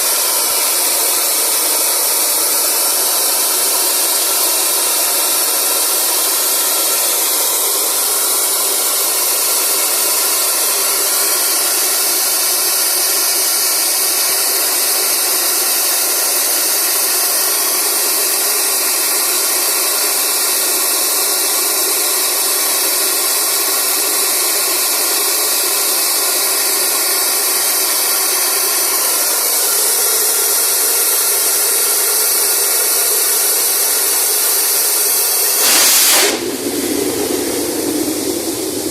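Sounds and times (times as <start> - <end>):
air compressor droning: 0.0 - 38.9
rushing hiss of air and water: 35.2 - 38.9.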